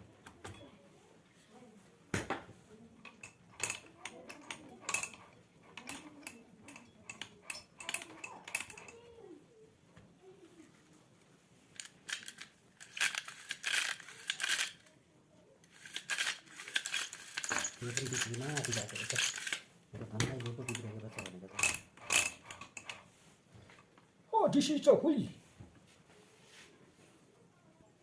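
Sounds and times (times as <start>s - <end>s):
metal tools clicking and clinking: 3.0s - 9.2s, 11.8s - 14.9s, 15.6s - 23.1s
scraping and clattering: 3.0s - 9.2s, 15.6s - 23.9s.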